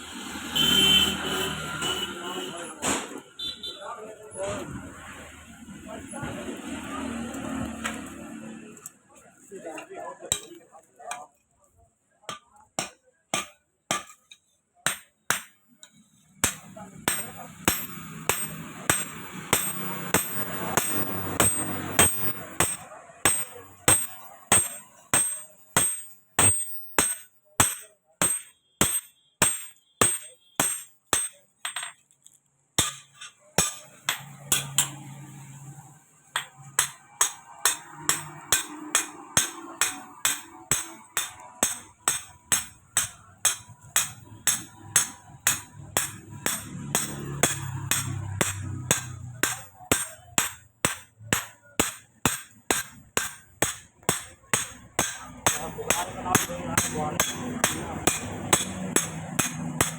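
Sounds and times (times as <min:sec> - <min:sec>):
hammer striking metal on anvil: 0:10.3 - 0:10.6, 0:12.3 - 0:32.0, 0:32.8 - 0:35.2, 0:36.3 - 0:59.9.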